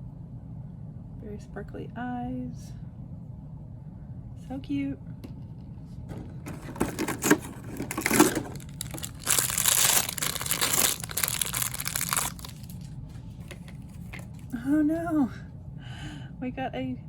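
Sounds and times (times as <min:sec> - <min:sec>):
plastic bag crinkling and tearing: 0:06.5 - 0:13.0
plastic bag clicks: 0:07.8 - 0:12.6.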